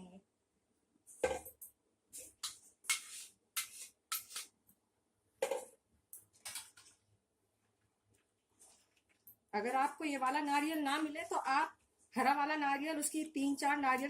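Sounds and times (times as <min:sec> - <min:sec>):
kitchen utensils scraping and clinking: 0:02.2 - 0:04.5.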